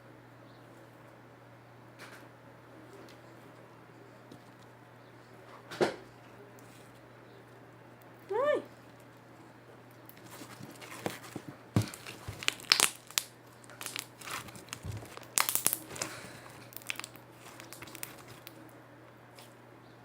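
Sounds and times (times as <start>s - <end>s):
slime crackling and popping: 11.8s - 18.6s.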